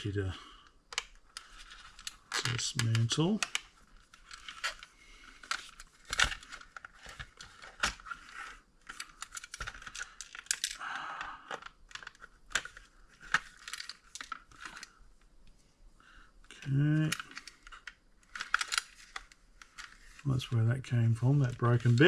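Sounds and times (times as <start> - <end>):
clicks and knocks of parts: 0.9 - 15.0, 17.0 - 20.2.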